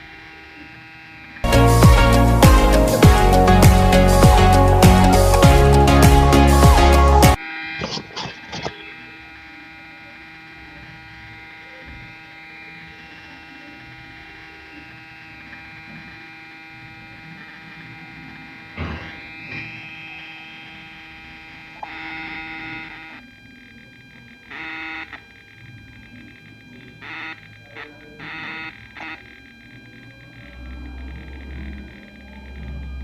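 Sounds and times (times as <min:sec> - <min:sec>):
speaker electrical buzz and hum: 0:00.0 - 0:33.0
thump: 0:18.8 - 0:19.7.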